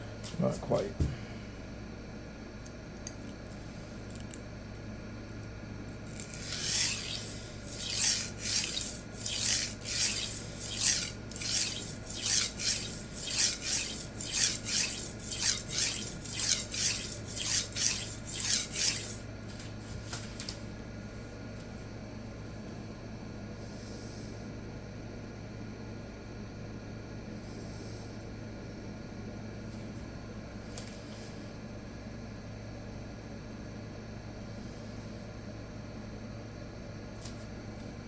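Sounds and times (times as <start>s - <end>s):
knife scraping on sharpening stone: 6.1s - 19.2s.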